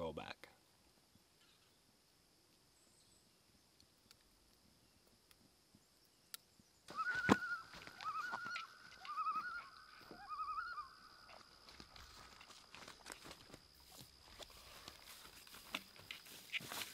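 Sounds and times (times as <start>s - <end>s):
loon tremolo call: 6.9s - 11.2s.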